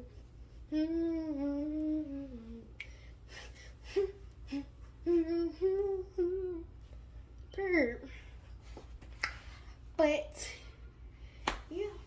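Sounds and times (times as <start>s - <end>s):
woman humming: 0.7s - 2.8s, 3.8s - 6.7s.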